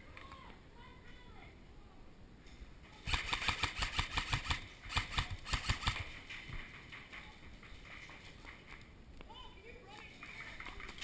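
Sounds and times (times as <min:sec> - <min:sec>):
airsoft gun shots: 0:03.0 - 0:06.1.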